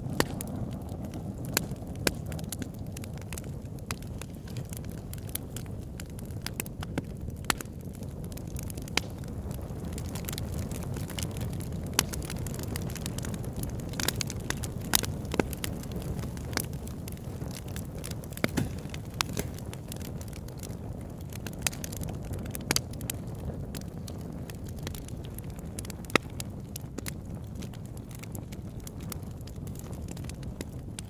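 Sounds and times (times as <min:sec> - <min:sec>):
low rumble of fire: 0:00.0 - 0:31.0
wood crackling and popping: 0:00.0 - 0:31.0.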